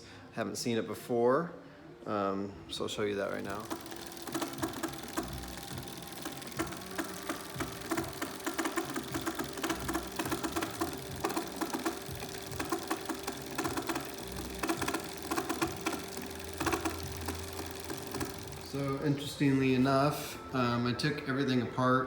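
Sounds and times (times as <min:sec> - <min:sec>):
electric bike motor humming: 0:03.2 - 0:19.9
rapid gear clicking: 0:03.4 - 0:19.0.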